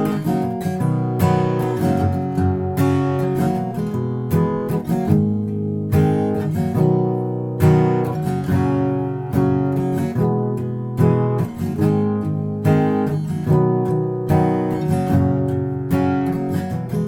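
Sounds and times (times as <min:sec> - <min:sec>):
strummed acoustic guitar: 0:00.0 - 0:17.0.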